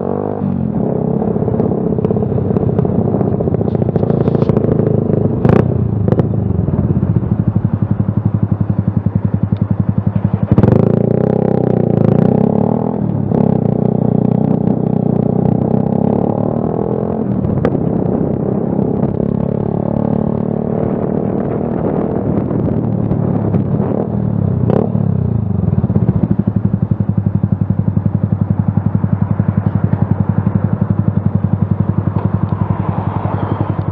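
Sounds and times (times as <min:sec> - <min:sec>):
motorcycle engine revving: 0:00.0 - 0:33.9
motorcycle engine idling: 0:01.6 - 0:11.1, 0:22.9 - 0:33.9.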